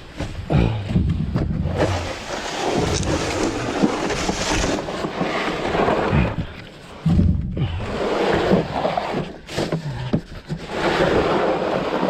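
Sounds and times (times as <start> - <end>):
cable rattling inside drain: 1.3 - 7.7.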